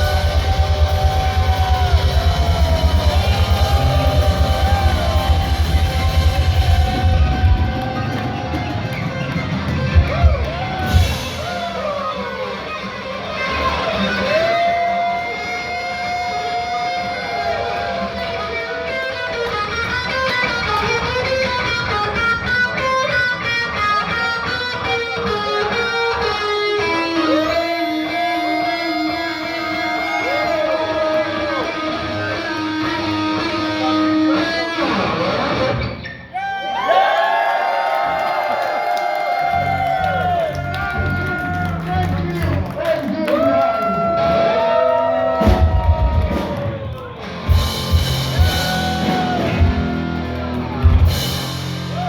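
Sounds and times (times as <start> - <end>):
electric guitar solo: 0.0 - 37.1, 43.4 - 52.0.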